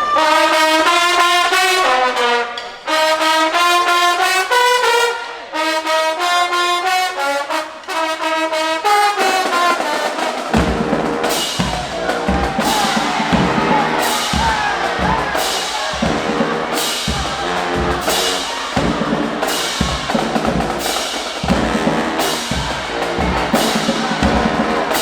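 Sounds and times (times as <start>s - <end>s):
marching band brass melody: 0.0s - 25.0s
bass drums hitting: 10.6s - 20.8s.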